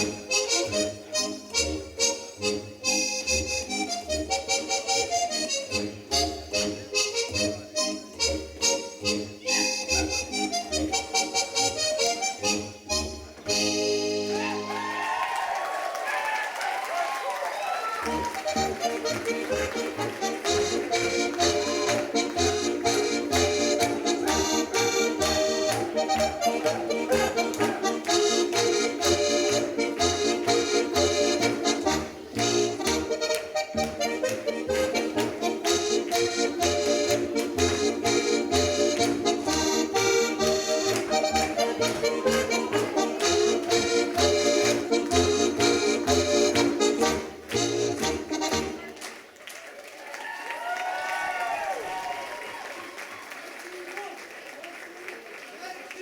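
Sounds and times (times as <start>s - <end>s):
accordion folk dance music: 0.0s - 15.1s, 17.6s - 49.4s.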